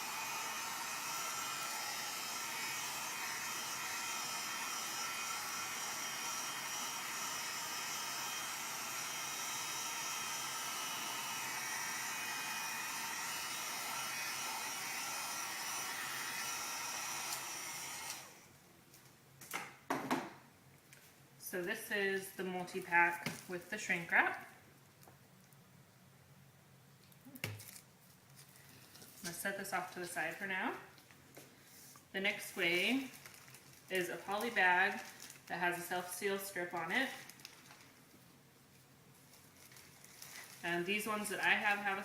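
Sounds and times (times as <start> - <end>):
heat gun blowing: 0.0 - 18.5, 34.0 - 37.2.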